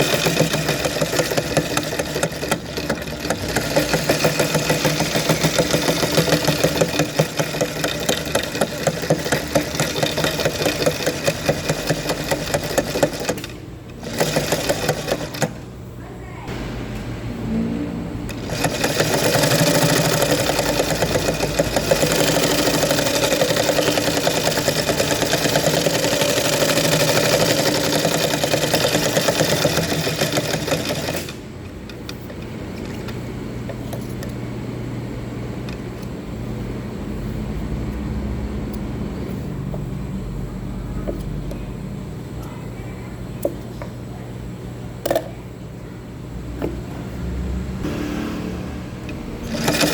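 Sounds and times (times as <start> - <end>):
sewing machine stitching: 0.0 - 15.6, 18.3 - 33.2, 49.4 - 49.9
steady low hum: 31.5 - 49.9.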